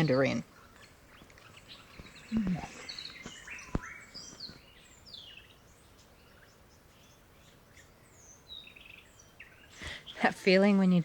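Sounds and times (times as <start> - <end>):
birds chirping and whistling: 0.0 - 10.3.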